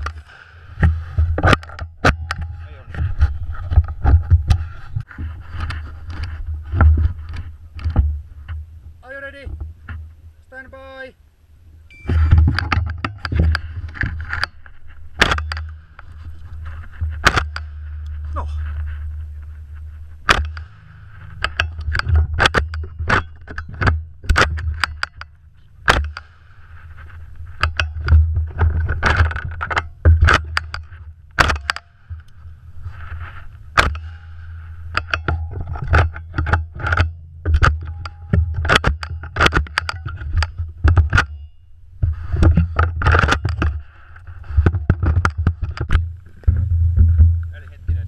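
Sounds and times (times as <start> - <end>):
low rumble: 11.2 - 39.3, 43.8 - 48.0.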